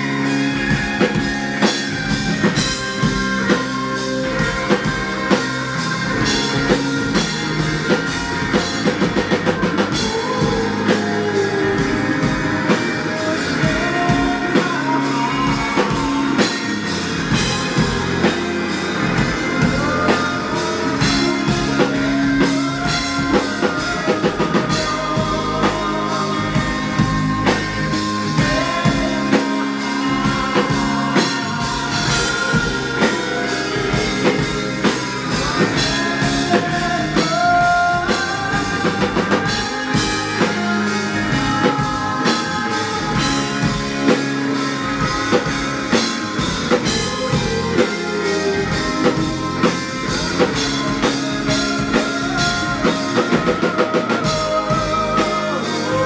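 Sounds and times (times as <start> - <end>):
drum kit beat: 0.0 - 56.0
electric guitar: 0.0 - 56.0.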